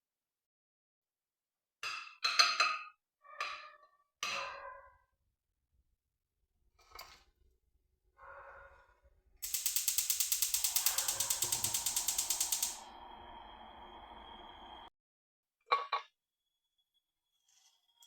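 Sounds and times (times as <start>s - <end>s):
gas stove igniter clicking: 9.4s - 13.5s
gas burner hissing: 9.4s - 14.9s.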